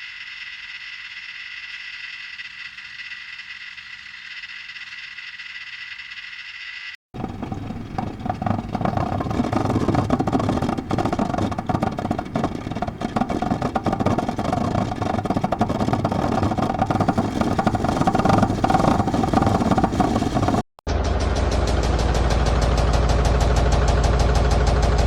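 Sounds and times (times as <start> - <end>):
machine clattering: 7.2 - 20.6.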